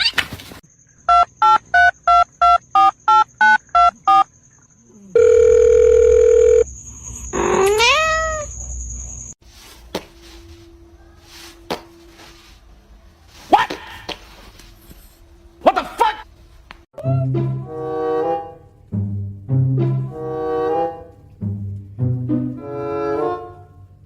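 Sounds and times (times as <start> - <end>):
cat meowing: 7.4 - 8.5.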